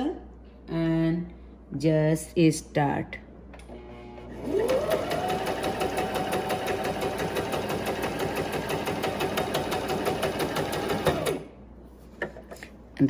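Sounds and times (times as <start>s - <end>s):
sewing machine stitching: 3.7s - 11.5s.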